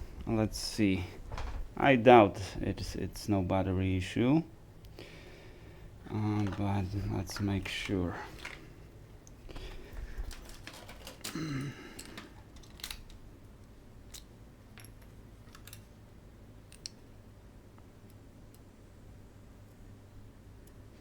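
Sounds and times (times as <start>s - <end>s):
faint low hum: 0.0s - 21.0s
small parts clicking and tapping: 9.2s - 16.0s, 16.7s - 17.0s.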